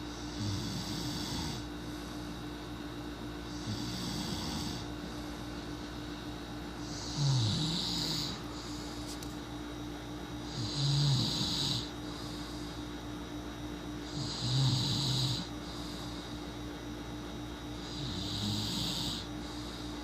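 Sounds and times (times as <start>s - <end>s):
person snoring: 0.0s - 1.7s, 3.5s - 5.2s, 6.8s - 9.1s, 10.4s - 12.8s, 14.0s - 16.4s, 17.8s - 20.0s.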